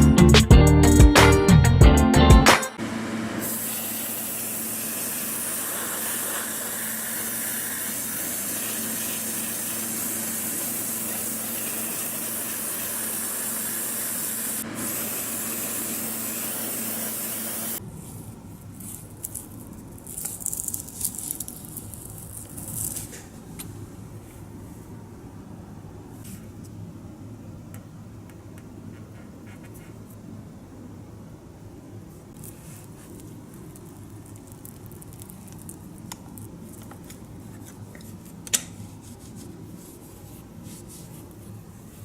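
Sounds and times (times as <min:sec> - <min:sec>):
paint spray hissing: 0:03.4 - 0:17.8.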